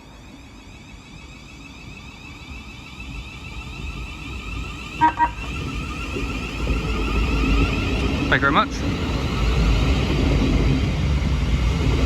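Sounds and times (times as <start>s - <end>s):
electric train hum: 0.0s - 12.0s
train horn toots: 5.0s - 5.6s.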